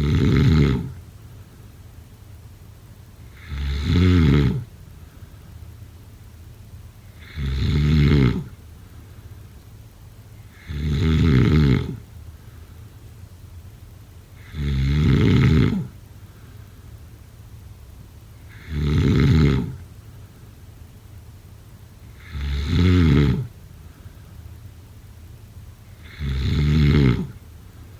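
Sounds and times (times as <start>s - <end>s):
loud snoring: 0.0s - 1.0s, 3.3s - 4.7s, 7.1s - 8.6s, 10.5s - 12.0s, 14.4s - 16.0s, 18.5s - 19.8s, 22.1s - 23.6s, 25.9s - 27.4s.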